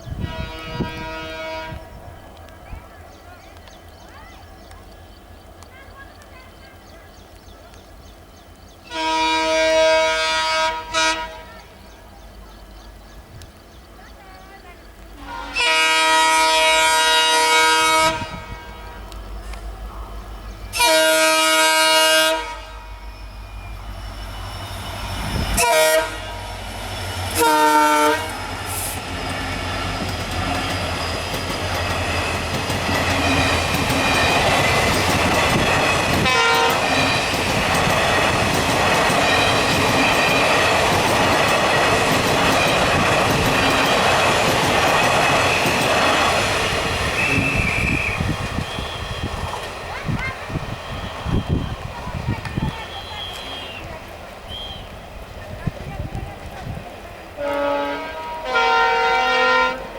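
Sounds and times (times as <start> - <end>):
locomotive horn blasts: 0.1 - 2.0, 8.9 - 11.7, 15.2 - 19.2, 20.7 - 23.2, 25.6 - 26.6, 27.3 - 28.9, 36.1 - 37.4, 57.4 - 59.9
train wheels clattering over rails: 26.9 - 53.7.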